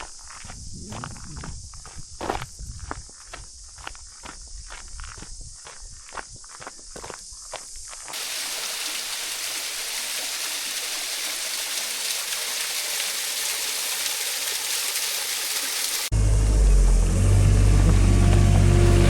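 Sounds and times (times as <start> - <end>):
rush of flowing water: 8.1 - 16.1.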